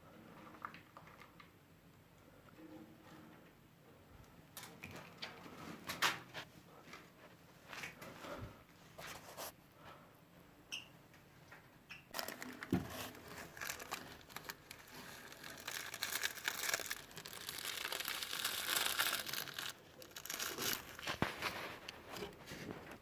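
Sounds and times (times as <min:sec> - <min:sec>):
rustling and crinkling: 0:12.1 - 0:23.0.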